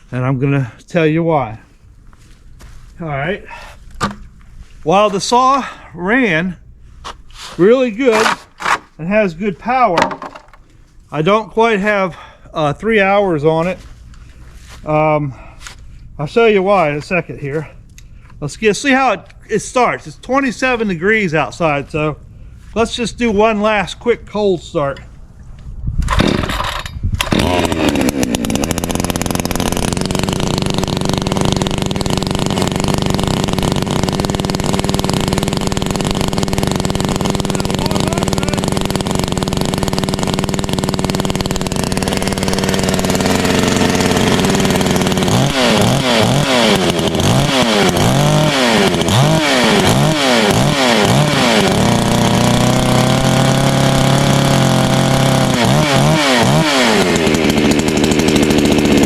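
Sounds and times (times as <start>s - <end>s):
chainsaw running and revving: 26.2s - 59.0s.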